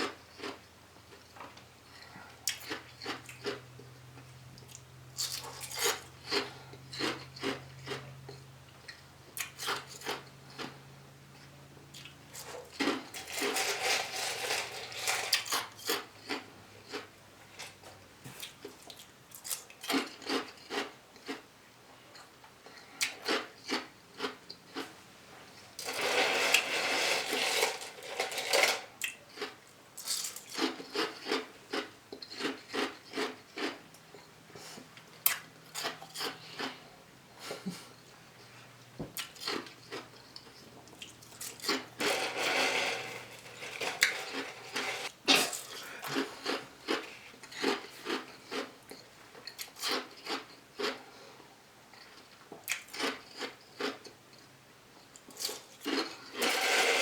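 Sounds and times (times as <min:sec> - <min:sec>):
close-miked chewing: 0:00.0 - 0:13.5, 0:29.0 - 0:42.0, 0:43.4 - 0:51.0
crunching or rustling: 0:41.0 - 0:48.6.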